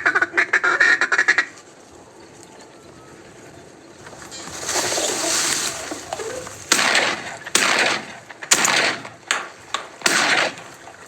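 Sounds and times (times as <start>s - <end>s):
shotgun shots: 6.6s - 11.0s.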